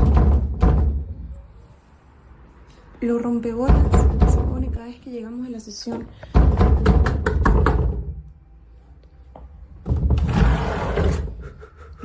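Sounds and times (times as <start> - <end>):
knocking on a door: 0.0 - 1.1, 3.6 - 4.8, 6.3 - 8.1.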